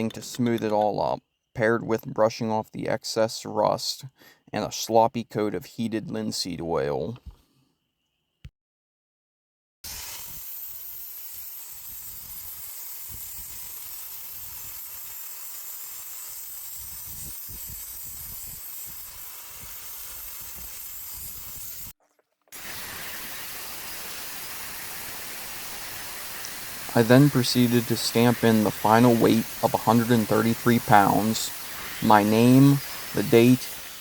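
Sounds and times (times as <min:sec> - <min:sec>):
gas torch hissing: 0:09.9 - 0:21.9, 0:22.6 - 0:34.0.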